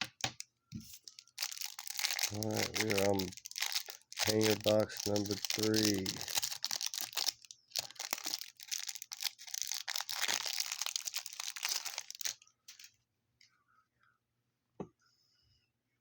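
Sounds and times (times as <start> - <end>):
packaging being torn and crinkled: 0.9 - 12.9.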